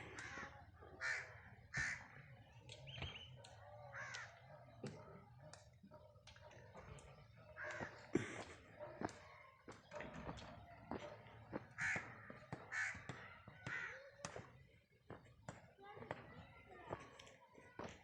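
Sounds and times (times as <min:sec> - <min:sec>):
crows cawing: 0:00.0 - 0:02.3, 0:03.9 - 0:04.4, 0:07.4 - 0:08.2, 0:11.7 - 0:14.2.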